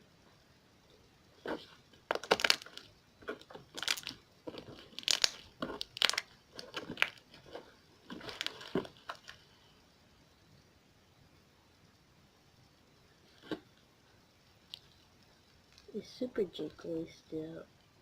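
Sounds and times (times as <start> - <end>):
slime crackling pops: 2.1 - 7.2.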